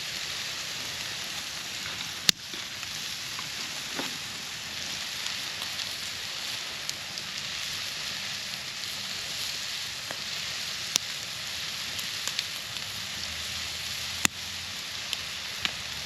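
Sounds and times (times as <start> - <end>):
campfire crackling pops: 0.0 - 16.0
sausages sizzling on a grill: 0.0 - 16.0.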